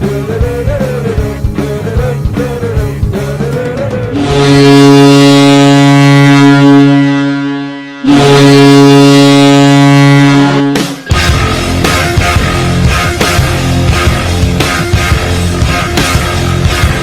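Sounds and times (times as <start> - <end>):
goal horn blasts: 4.2 - 14.3.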